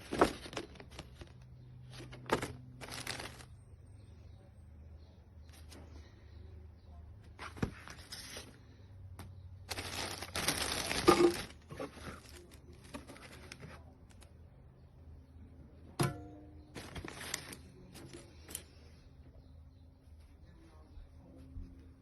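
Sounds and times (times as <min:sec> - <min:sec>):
rustling crinkling handling noise: 0:00.0 - 0:03.6, 0:07.2 - 0:14.3, 0:16.7 - 0:18.9.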